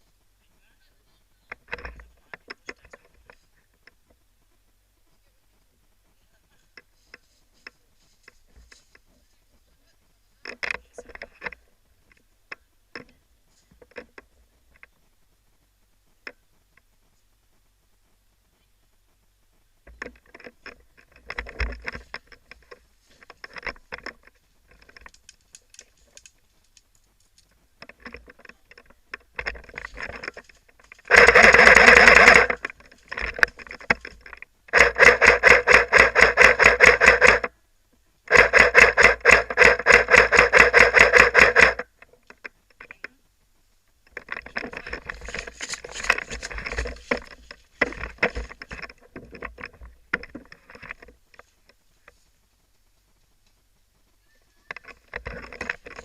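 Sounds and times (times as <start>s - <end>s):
quiet scattered crackles: 0.0s - 56.0s
airsoft gun full-auto bursts: 31.1s - 32.6s, 34.7s - 37.5s, 38.3s - 41.8s.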